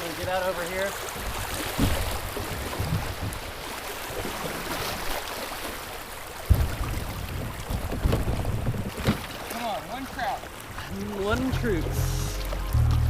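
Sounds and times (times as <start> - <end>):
flowing river water: 0.0 - 13.0
low thumps and knocks: 1.2 - 3.6, 6.4 - 9.3.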